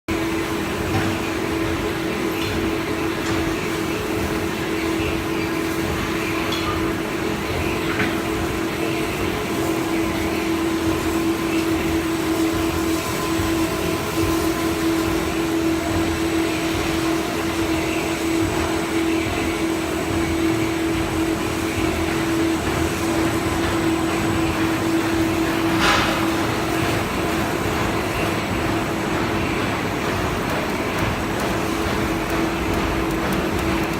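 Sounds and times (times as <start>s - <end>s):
machine humming: 0.1s - 33.9s.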